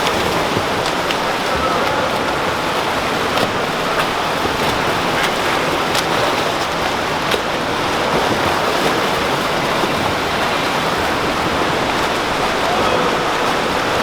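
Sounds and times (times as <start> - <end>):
swimmers splashing in pool: 0.0 - 14.0.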